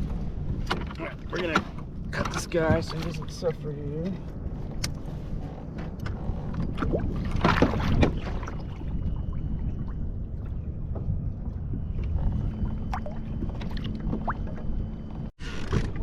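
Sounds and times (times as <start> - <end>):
wind rumbling on microphone: 0.0 - 16.0.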